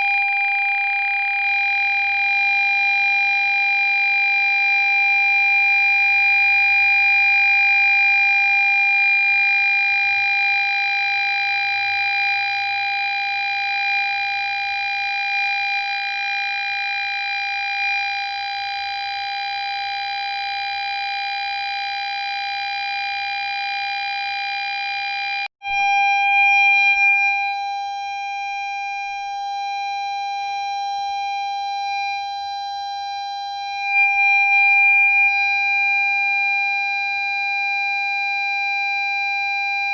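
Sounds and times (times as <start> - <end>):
parking sensor continuous tone: 8.2 - 16.2.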